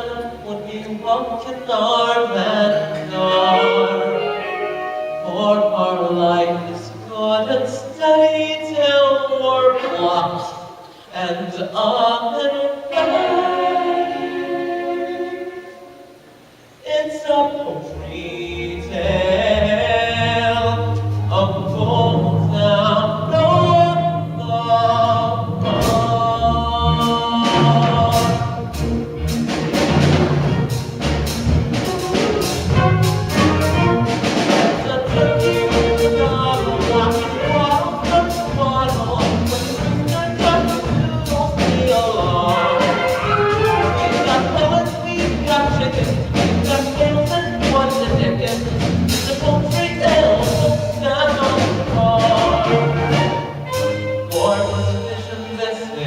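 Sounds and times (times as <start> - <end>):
ensemble singing: 0.0 - 56.0
instrumental accompaniment: 2.6 - 7.6, 17.9 - 56.0.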